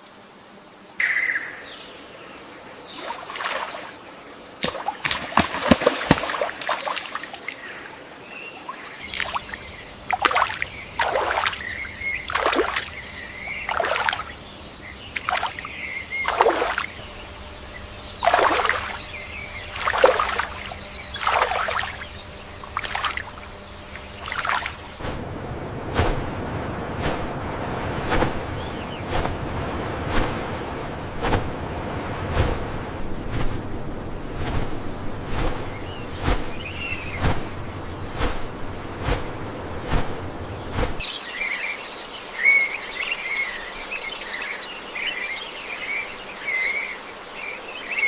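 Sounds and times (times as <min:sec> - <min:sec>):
high-pitched hiss: 0:00.0 - 0:25.0
faint bird chirps: 0:01.0 - 0:05.2, 0:06.3 - 0:24.9, 0:35.6 - 0:38.6
water splashing and sloshing: 0:02.8 - 0:04.0, 0:04.6 - 0:41.3.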